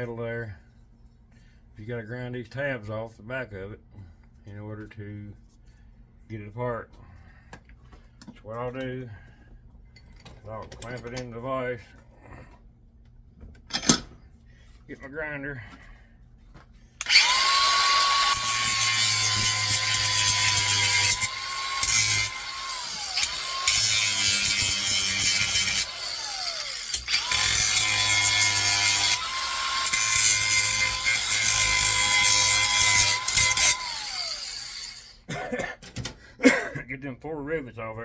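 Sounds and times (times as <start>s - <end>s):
electric grinder grinding metal: 17.0s - 35.2s
grinder motor winding down: 17.0s - 35.2s.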